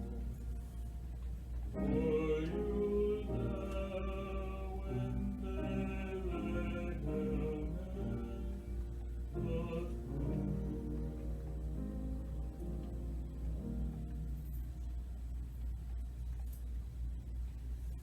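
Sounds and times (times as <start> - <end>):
choir singing held notes: 0.0 - 14.2.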